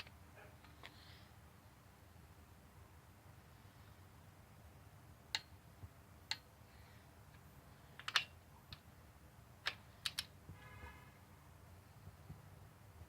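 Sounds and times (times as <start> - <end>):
metallic clicks and taps of hand tools: 8.0 - 8.8, 9.6 - 10.3.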